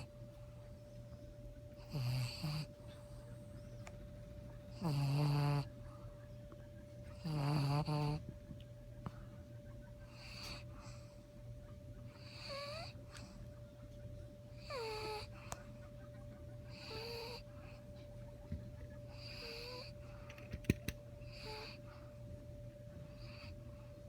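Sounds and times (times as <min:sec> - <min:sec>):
dog snoring: 0:00.0 - 0:00.6, 0:01.6 - 0:03.9, 0:04.5 - 0:06.0, 0:07.0 - 0:08.4, 0:10.0 - 0:11.2, 0:12.1 - 0:13.4, 0:14.5 - 0:15.7, 0:16.6 - 0:17.8, 0:18.8 - 0:20.4, 0:21.2 - 0:22.1, 0:23.0 - 0:24.0
steady hum: 0:00.0 - 0:24.0.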